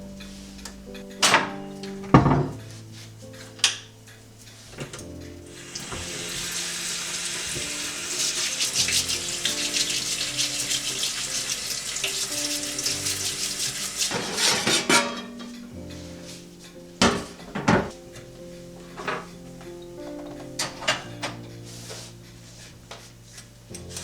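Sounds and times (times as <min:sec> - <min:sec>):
tap running into sink: 0:05.5 - 0:14.8.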